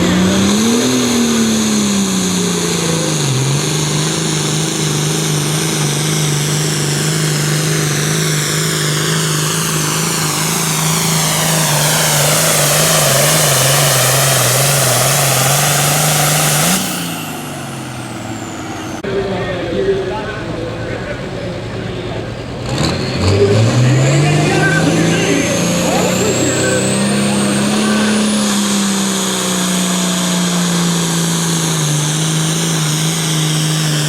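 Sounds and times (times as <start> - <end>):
diesel tractor engine under load: 0.0 - 34.0.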